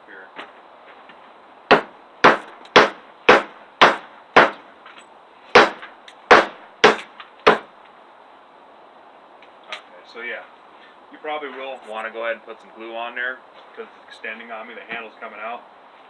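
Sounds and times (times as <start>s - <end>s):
hatchet striking wood: 1.7s - 4.6s, 5.6s - 7.7s.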